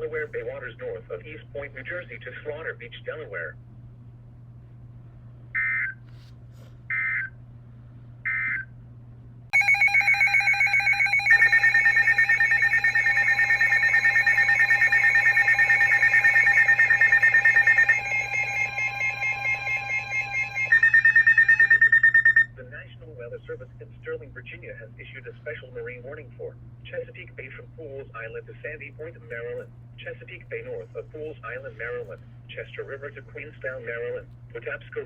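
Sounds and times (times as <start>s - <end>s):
digital data tones: 9.6s - 22.5s
rapidly pulsing alert tone: 9.6s - 22.5s.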